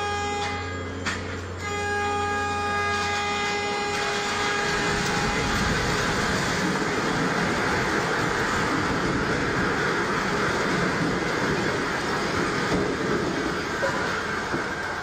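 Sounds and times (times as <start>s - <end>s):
warning horn blast: 0.0s - 6.4s
deep rumble of building collapsing: 4.0s - 15.0s.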